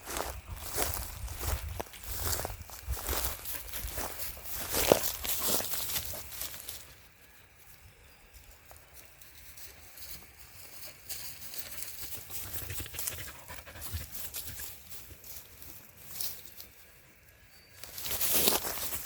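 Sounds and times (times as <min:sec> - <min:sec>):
dog panting: 0:12.6 - 0:14.6.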